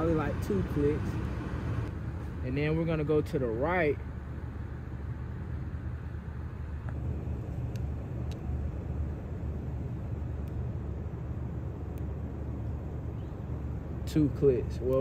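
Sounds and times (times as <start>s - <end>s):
low outdoor rumble: 0.0s - 15.0s.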